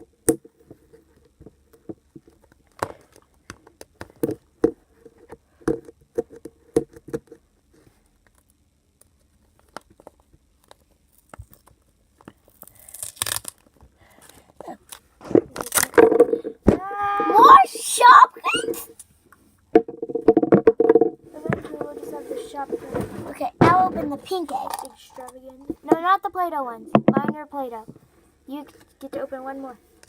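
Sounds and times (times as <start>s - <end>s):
plastic eggs clicking and crinkling: 8.2s - 16.6s, 24.2s - 26.0s
duct tape peeling and tearing: 12.5s - 13.7s.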